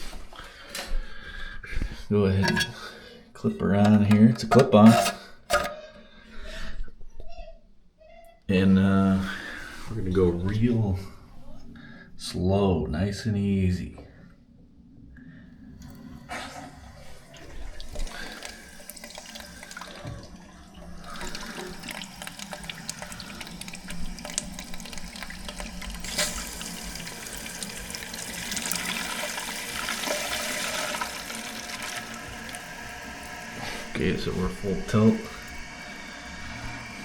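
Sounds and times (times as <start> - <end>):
water running into toilet tank: 1.8 - 6.7, 15.6 - 37.0.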